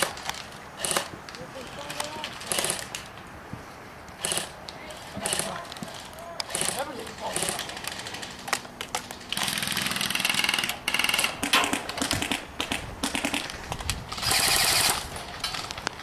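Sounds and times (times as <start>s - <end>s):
airsoft guns firing bursts: 0.0s - 1.1s, 2.4s - 3.0s, 4.2s - 8.4s, 9.3s - 15.7s.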